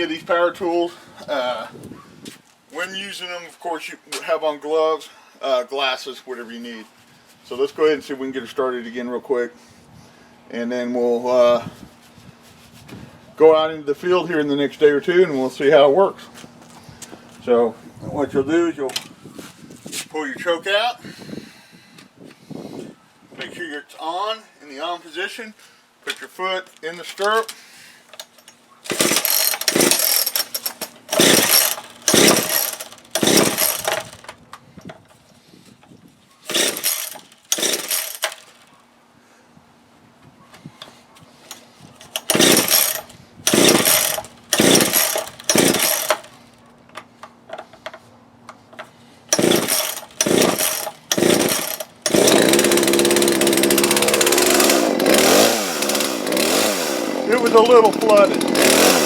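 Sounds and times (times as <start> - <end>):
chainsaw recoil starter pulls: 27.1 - 34.4, 36.4 - 38.7, 41.5 - 46.4, 49.3 - 59.0
chainsaw engine running: 28.9 - 34.2, 36.5 - 38.6, 41.5 - 46.5, 49.3 - 59.0.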